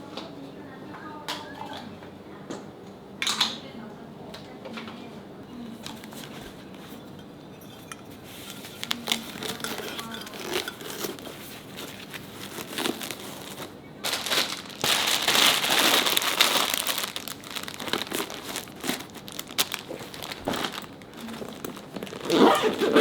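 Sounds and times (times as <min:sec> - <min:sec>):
packaging crinkling: 0:08.7 - 0:23.0.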